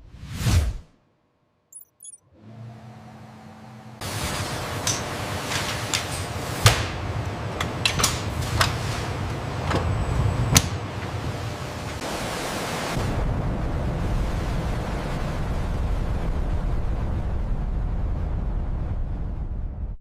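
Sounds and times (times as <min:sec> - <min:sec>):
machinery hum: 0:01.8 - 0:20.0
sharp clicks and knocks: 0:04.8 - 0:09.9
deep low rumble: 0:13.0 - 0:20.0.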